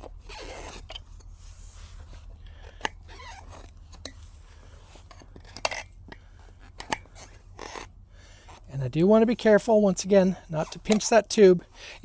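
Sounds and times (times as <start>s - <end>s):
tyre bead scraping and squeaking: 0.0s - 8.8s, 10.5s - 11.3s.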